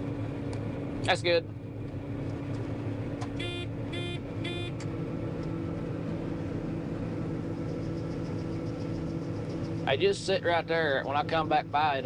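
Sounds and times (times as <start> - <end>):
farm machine engine drone: 0.0 - 12.0
electronic warning beeps: 3.4 - 4.8.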